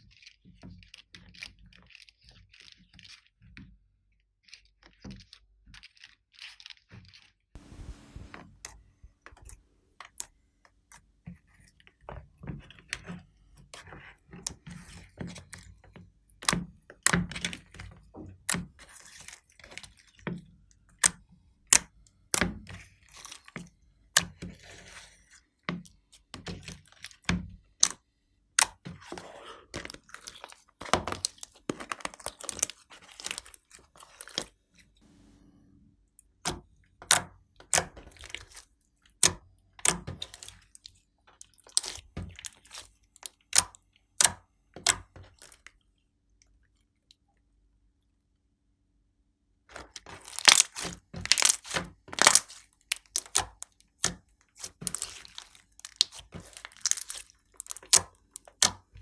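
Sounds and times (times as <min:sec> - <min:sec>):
slime crackling: 0:49.8 - 0:53.6, 0:54.6 - 0:59.0.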